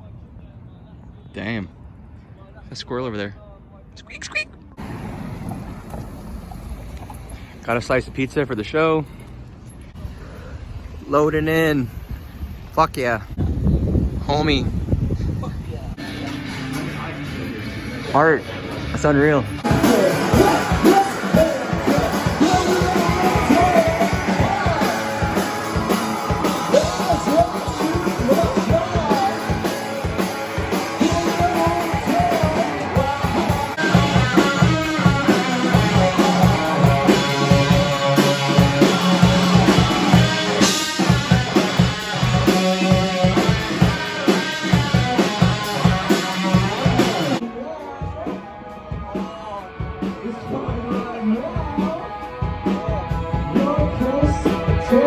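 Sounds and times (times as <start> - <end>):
drums: 4.8 - 8.4, 13.4 - 55.0
electric guitar: 16.0 - 47.4
person singing: 19.6 - 41.3, 42.1 - 55.0.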